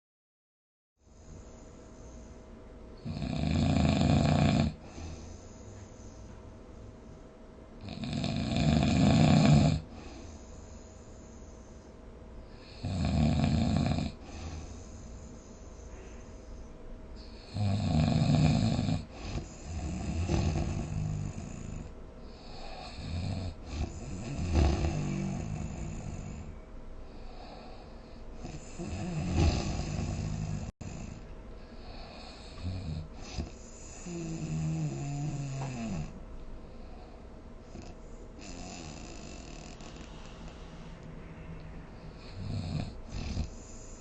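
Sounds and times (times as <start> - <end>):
person snoring: 3.0 - 5.5, 7.8 - 10.4, 12.6 - 15.2, 17.2 - 26.6, 27.2 - 31.2, 31.8 - 36.2, 37.7 - 44.0
sleeping breaths: 3.0 - 6.4, 7.8 - 44.0.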